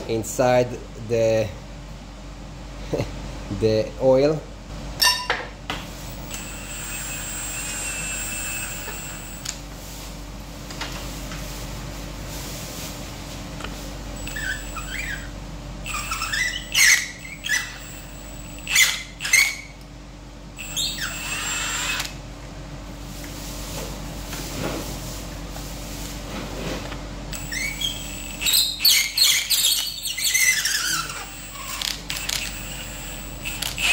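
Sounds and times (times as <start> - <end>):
steady high whine: 6.0 - 9.6, 13.6 - 19.3, 30.6 - 33.9
metal squeaking and scraping: 14.2 - 15.3, 27.4 - 31.8.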